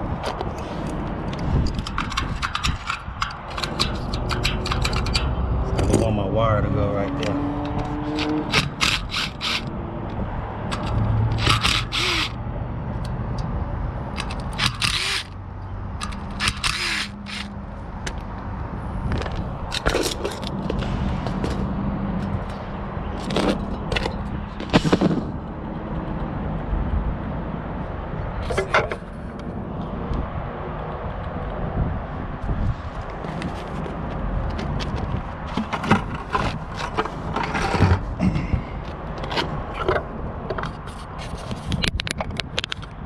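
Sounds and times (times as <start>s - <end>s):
clicks and scrapes of hand work: 0.2s - 6.1s, 7.2s - 9.7s, 10.7s - 12.3s, 14.2s - 15.3s, 16.0s - 17.5s, 34.6s - 38.2s, 39.2s - 42.9s.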